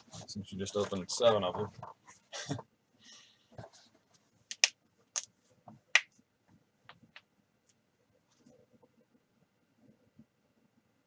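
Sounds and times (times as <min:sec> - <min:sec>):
light rustle of card packs: 0:00.0 - 0:02.4.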